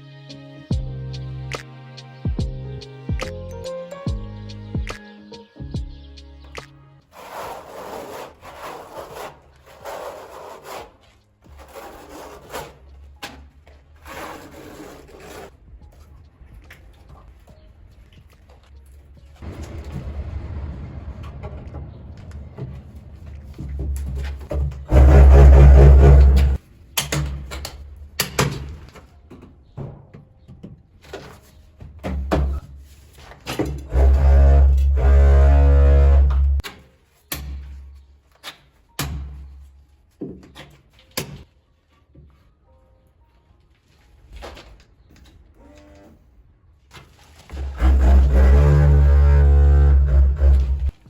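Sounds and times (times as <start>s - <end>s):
hand tool scraping hard surface: 7.1s - 15.5s, 23.6s - 26.6s, 32.7s - 36.6s, 47.3s - 51.0s.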